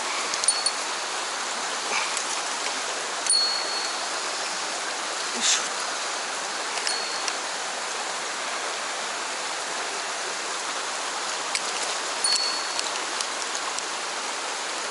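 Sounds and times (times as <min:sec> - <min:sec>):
stream rushing: 0:00.0 - 0:14.9
bell jingling: 0:00.4 - 0:00.8, 0:03.3 - 0:04.1, 0:06.8 - 0:07.3, 0:12.2 - 0:13.0.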